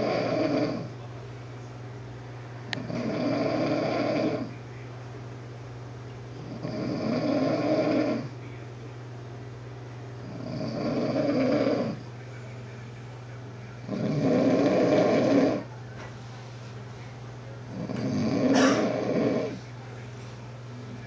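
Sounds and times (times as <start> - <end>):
person snoring loudly: 0.0 - 0.9, 2.8 - 4.5, 6.4 - 8.3, 10.3 - 12.0, 13.9 - 15.7, 17.7 - 19.6.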